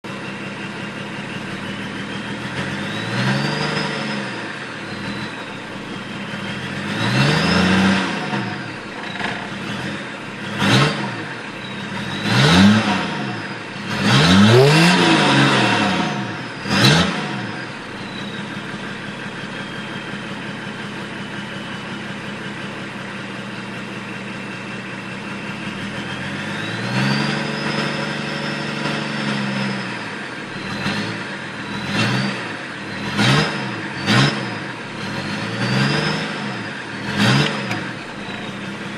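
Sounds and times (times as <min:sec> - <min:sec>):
diesel engine idling and revving: 0:00.0 - 0:38.9
turbo whistling: 0:02.0 - 0:10.0, 0:11.4 - 0:20.3, 0:25.4 - 0:31.0, 0:31.6 - 0:38.9.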